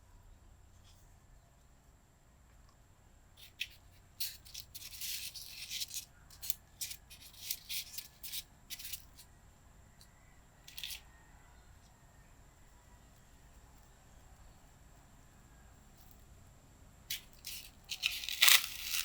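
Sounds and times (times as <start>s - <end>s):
packaging rustling and clicking: 17.1s - 19.0s.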